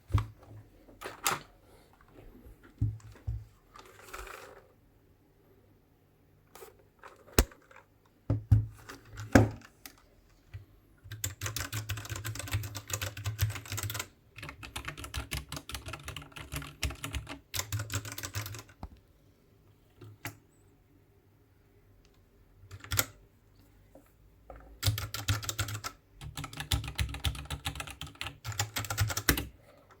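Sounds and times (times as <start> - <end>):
typing on mechanical keyboard: 11.0 - 18.8, 22.7 - 23.2, 24.8 - 29.5.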